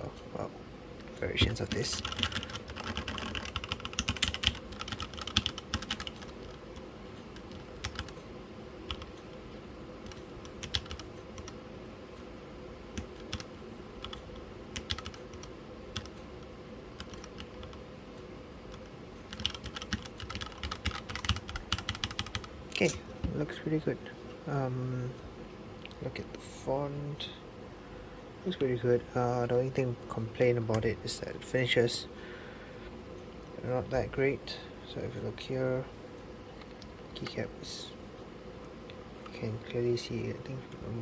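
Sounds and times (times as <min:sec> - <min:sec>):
typing on mechanical keyboard: 0:01.4 - 0:06.6, 0:07.4 - 0:08.2, 0:08.9 - 0:09.1, 0:10.0 - 0:11.6, 0:13.0 - 0:16.2, 0:17.0 - 0:17.8, 0:18.8 - 0:22.5.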